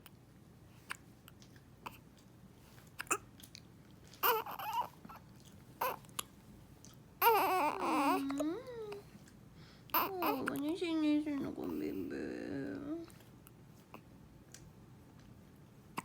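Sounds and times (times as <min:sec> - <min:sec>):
baby crying: 0:04.2 - 0:05.0, 0:05.8 - 0:06.0, 0:07.2 - 0:09.0, 0:09.9 - 0:10.6
baby whimpering: 0:04.2 - 0:05.2, 0:05.8 - 0:06.1, 0:07.2 - 0:09.1, 0:09.9 - 0:10.8
baby hiccuping: 0:05.8 - 0:06.3, 0:10.0 - 0:10.6.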